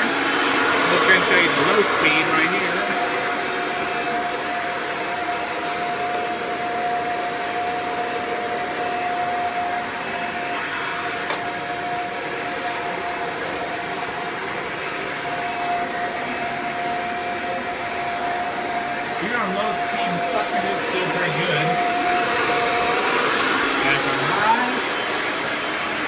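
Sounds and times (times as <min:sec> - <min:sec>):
vacuum cleaner motor whine: 0:00.0 - 0:26.0.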